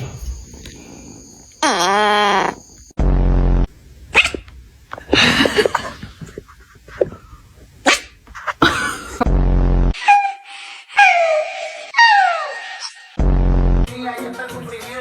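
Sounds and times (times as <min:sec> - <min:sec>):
pet animal crying: 0:01.6 - 0:02.8, 0:04.1 - 0:05.8.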